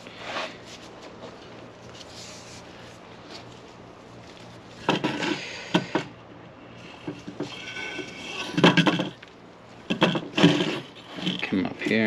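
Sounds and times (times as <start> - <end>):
tools clattering on a workbench: 4.8 - 6.2, 7.0 - 9.3, 9.9 - 12.0.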